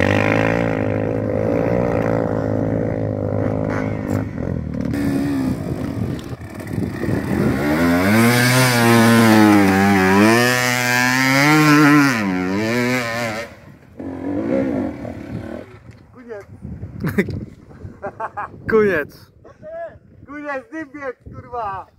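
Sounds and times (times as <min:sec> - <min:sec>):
vehicle engine revving: 0:00.0 - 0:15.8.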